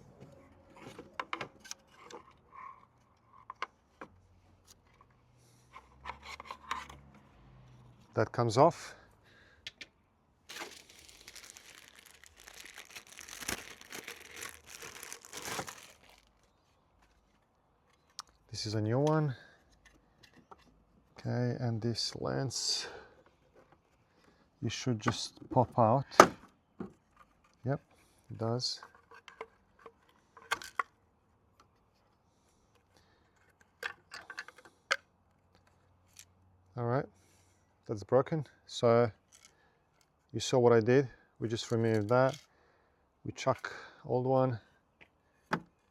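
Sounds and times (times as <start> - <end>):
plastic packaging crinkling: 10.5 - 16.8
plastic parts clicking and rattling: 10.5 - 18.2, 28.8 - 31.0, 32.8 - 35.0.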